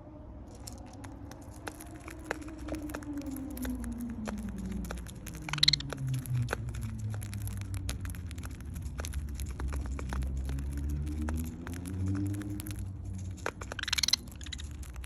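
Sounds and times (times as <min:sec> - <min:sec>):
budgies cracking seed clicks: 0:00.5 - 0:15.0
high bird chirp: 0:05.4 - 0:06.2, 0:13.6 - 0:15.0.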